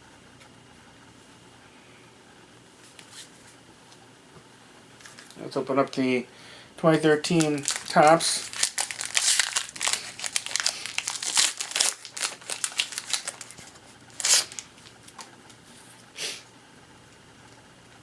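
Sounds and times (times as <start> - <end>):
foil wrapper tearing and crinkling: 5.0 - 5.4, 6.9 - 15.3.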